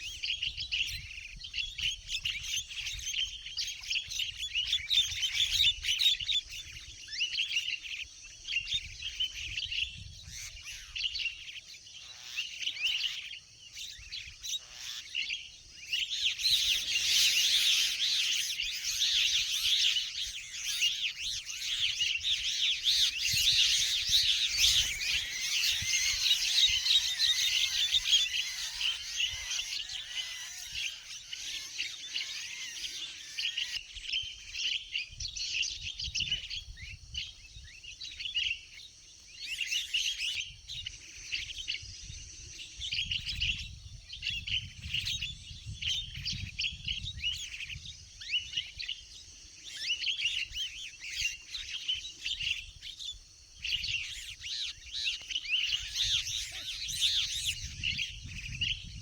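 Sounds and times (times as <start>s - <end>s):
birds chirping: 0.0s - 59.0s.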